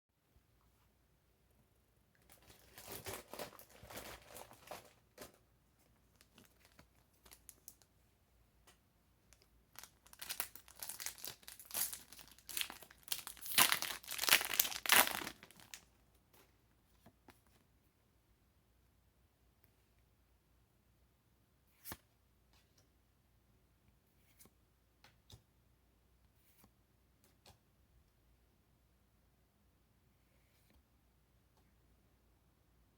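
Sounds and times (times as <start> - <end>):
foil wrapper crinkling and tearing: 9.8 - 15.8.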